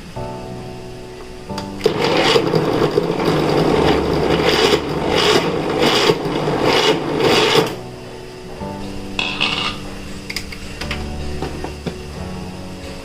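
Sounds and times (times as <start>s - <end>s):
food processor motor grinding: 1.8s - 7.8s.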